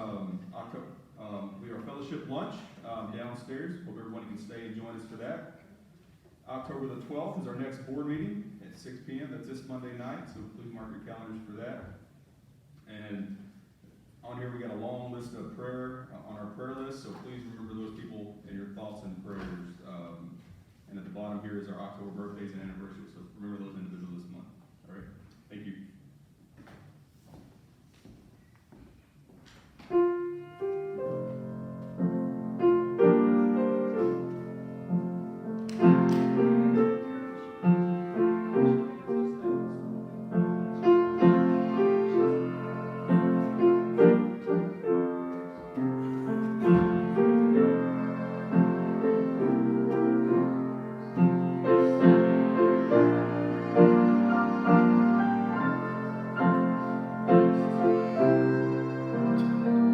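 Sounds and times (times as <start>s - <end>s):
piano playing slow chords: 29.9s - 59.9s.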